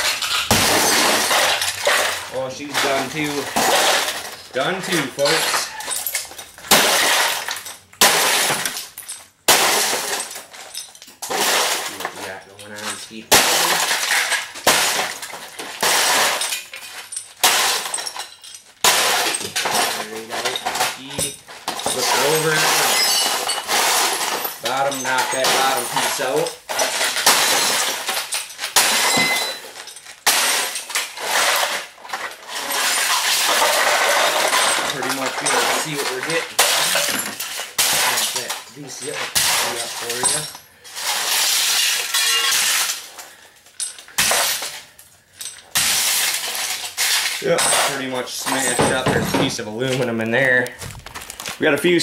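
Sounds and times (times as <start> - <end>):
heavy smashing blows: 0.0 - 10.6, 13.2 - 16.6
glass shattering and crashing: 0.0 - 52.0
pieces clattering: 0.0 - 52.0
broken plastic cracking and rattling: 50.6 - 51.6.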